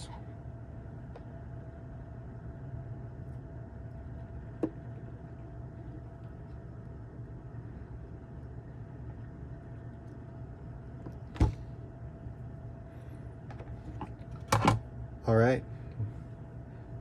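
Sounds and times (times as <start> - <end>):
low hum: 0.0 - 17.0.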